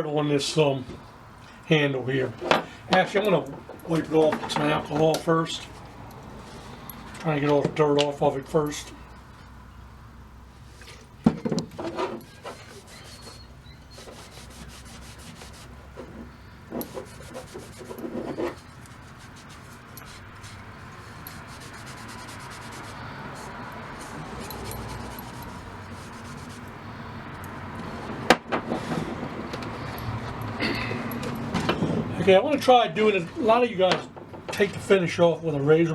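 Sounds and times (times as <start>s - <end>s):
handling knocks and clatters: 2.3s - 6.3s, 10.8s - 14.3s, 15.4s - 26.8s, 27.4s - 32.3s, 33.8s - 34.9s
rag rubbing wooden handle: 11.6s - 29.9s.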